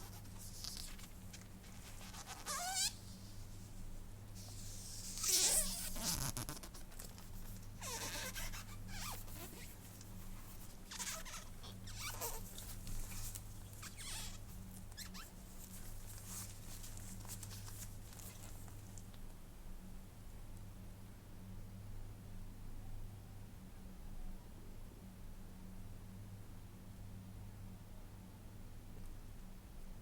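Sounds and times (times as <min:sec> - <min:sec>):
squeaky rubs and rustles: 0:00.0 - 0:03.8, 0:04.4 - 0:19.0
steady low hum: 0:00.0 - 0:30.0.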